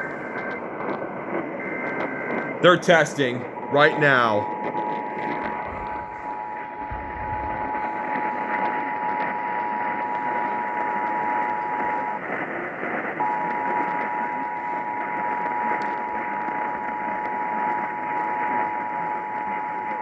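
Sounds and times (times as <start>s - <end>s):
radio static hiss: 0.0s - 12.3s.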